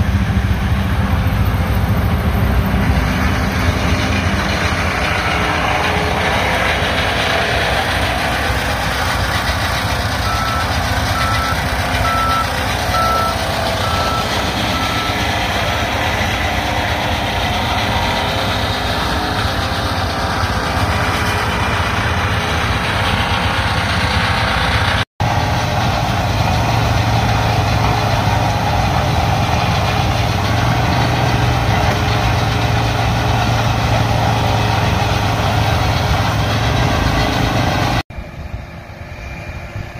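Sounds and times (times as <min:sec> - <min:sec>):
combine harvester running: 0:00.0 - 0:39.9
evenly spaced beeps: 0:10.2 - 0:15.2.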